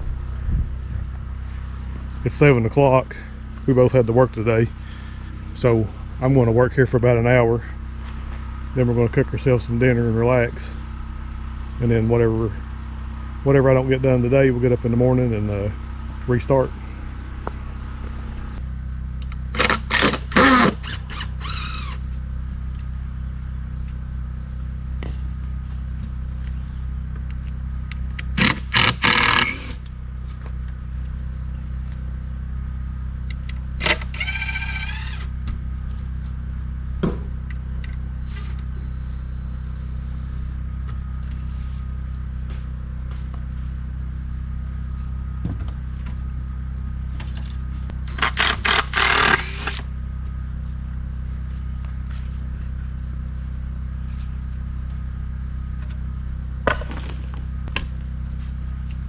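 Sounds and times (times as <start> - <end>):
generator engine humming: 0.0 - 59.0
power tool bursts: 19.5 - 22.0, 28.3 - 29.8, 48.0 - 49.9.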